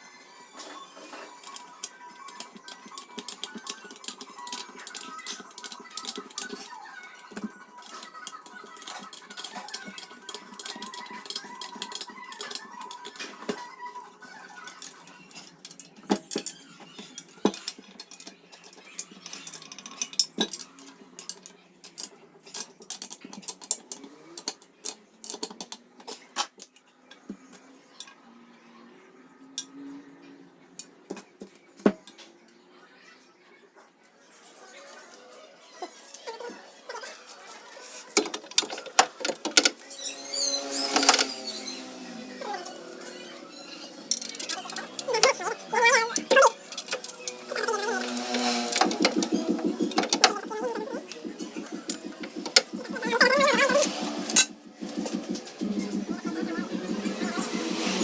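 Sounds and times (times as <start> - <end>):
metal tools clinking: 0.7 - 13.6, 14.3 - 26.6, 37.8 - 58.0.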